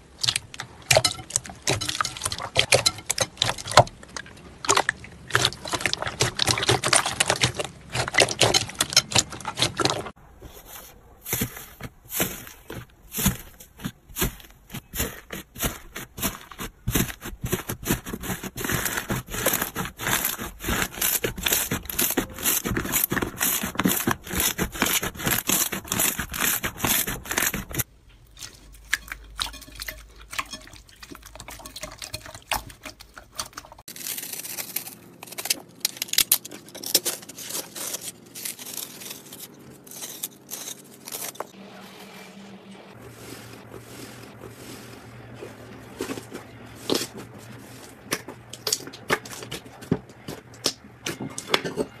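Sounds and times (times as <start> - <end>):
slime crackling and popping: 12.2 - 27.8.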